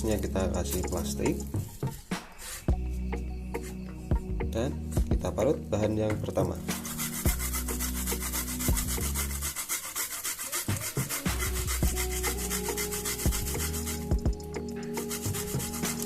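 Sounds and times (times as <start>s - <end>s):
shallot rasping on a grater: 6.7s - 14.1s, 14.9s - 16.0s.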